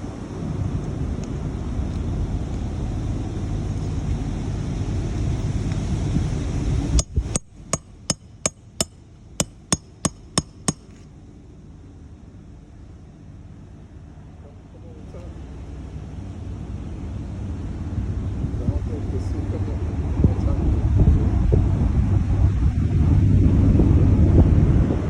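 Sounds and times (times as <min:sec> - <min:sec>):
wind buffeting microphone: 0:00.0 - 0:08.3, 0:16.1 - 0:25.0.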